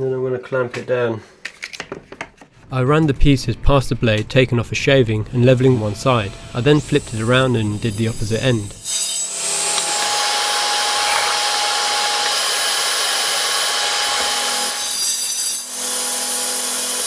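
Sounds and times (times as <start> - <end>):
table saw cutting metal: 4.0 - 17.0.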